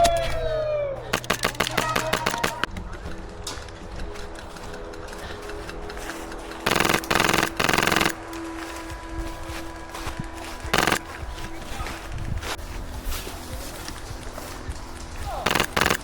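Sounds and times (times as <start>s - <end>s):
airsoft guns firing bursts: 1.1s - 2.8s, 5.2s - 8.8s, 10.7s - 11.6s, 15.3s - 16.0s.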